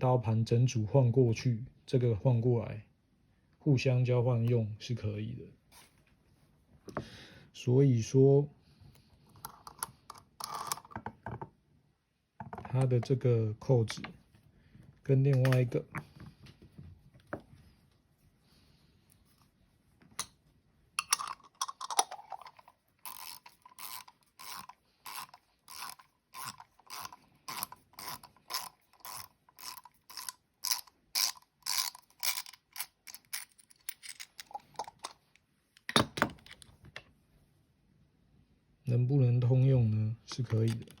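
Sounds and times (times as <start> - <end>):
coffee grinder ratcheting click: 21.9 - 34.9.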